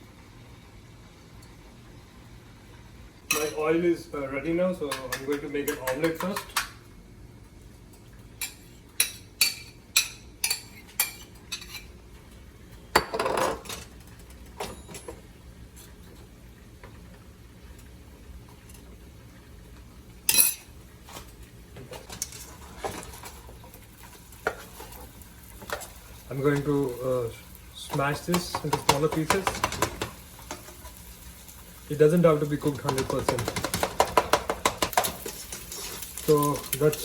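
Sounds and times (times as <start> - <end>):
cutlery clinking on dishes: 4.9 - 6.8, 8.4 - 11.9, 20.3 - 21.3.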